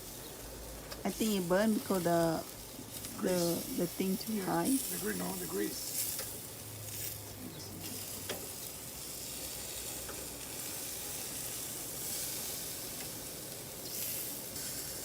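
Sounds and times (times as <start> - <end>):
meat sizzling on a grill: 0.0 - 15.0.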